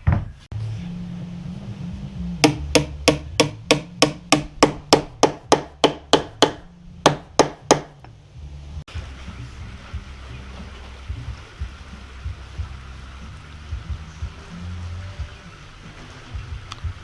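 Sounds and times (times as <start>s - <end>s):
hammer blows on wood: 2.4s - 8.0s.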